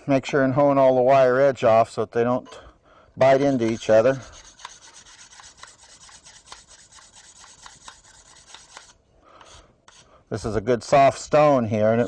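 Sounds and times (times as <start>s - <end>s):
sharpening stone scraping blade: 3.4s - 9.0s.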